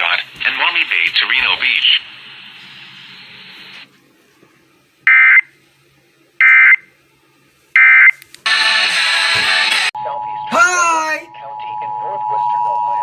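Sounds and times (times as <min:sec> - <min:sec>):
faint radio hiss: 0:00.0 - 0:07.7.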